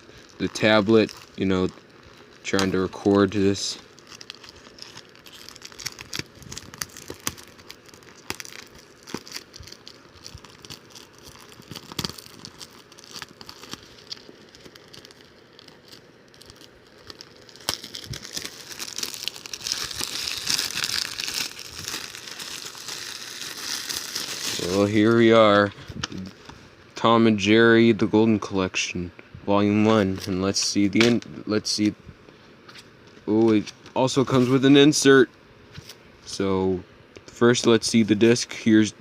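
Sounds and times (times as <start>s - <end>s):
plastic wrapping crinkling: 0.0s - 26.6s.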